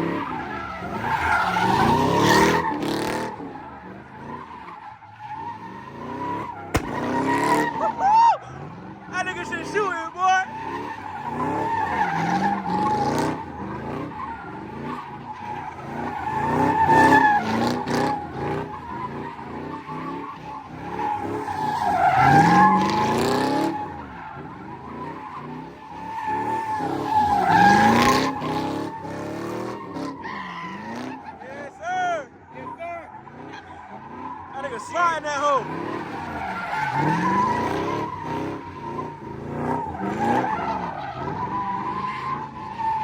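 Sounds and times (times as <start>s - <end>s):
car engine revving: 0.0s - 43.0s
tyres squealing: 18.7s - 43.0s.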